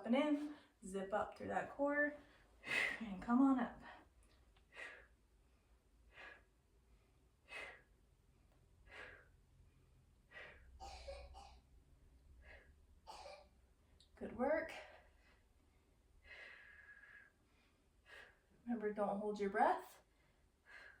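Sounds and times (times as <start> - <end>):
woman breathing: 2.2 - 3.2, 3.8 - 10.8, 11.6 - 13.0, 14.7 - 18.6, 20.0 - 21.0.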